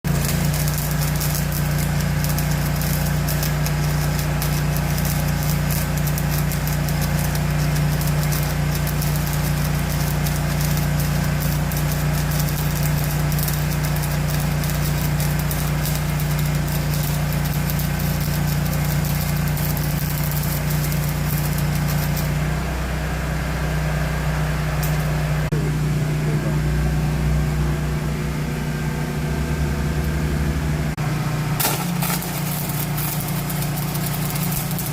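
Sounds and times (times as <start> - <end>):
engine running: 0.0 - 34.9
welding arc crackle: 0.1 - 22.4, 24.8 - 25.2, 31.6 - 34.9.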